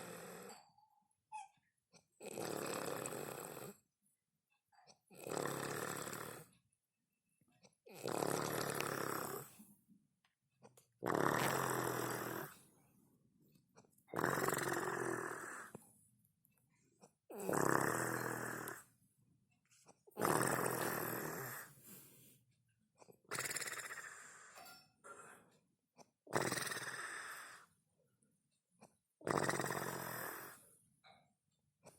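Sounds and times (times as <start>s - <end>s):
woman snoring: 0.0s - 0.6s, 2.2s - 3.8s, 5.2s - 6.5s, 7.9s - 9.5s, 11.0s - 12.6s, 14.2s - 15.8s, 17.3s - 18.9s, 20.2s - 21.8s, 23.3s - 24.6s, 26.3s - 27.7s, 29.2s - 30.6s.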